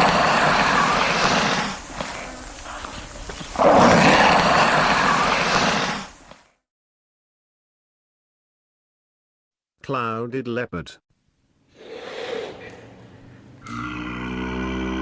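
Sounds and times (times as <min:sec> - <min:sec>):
lizard hissing: 0:00.0 - 0:06.3, 0:11.7 - 0:15.0.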